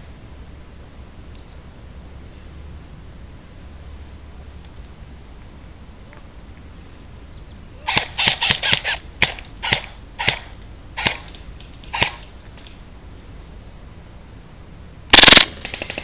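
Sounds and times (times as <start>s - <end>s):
airsoft gun shots: 7.9s - 12.3s, 15.1s - 16.0s.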